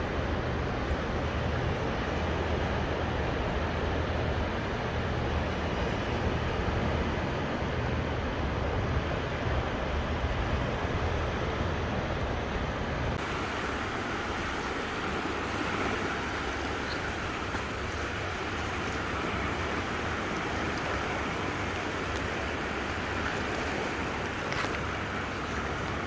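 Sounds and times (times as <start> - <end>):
small waves washing ashore: 0.0 - 26.0
wind rumble on microphone: 0.0 - 26.0
surf hiss: 12.8 - 26.0.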